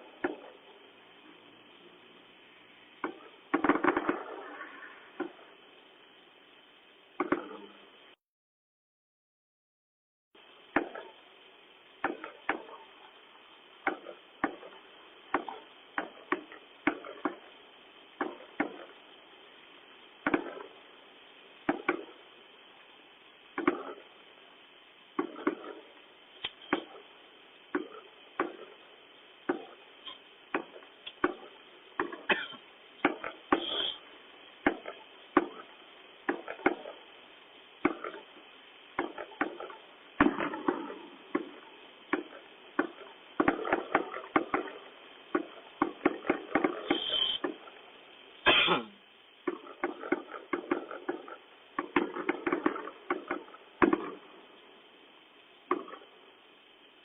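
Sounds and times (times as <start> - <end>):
fireworks banging and crackling: 0.0 - 8.2, 10.4 - 57.0.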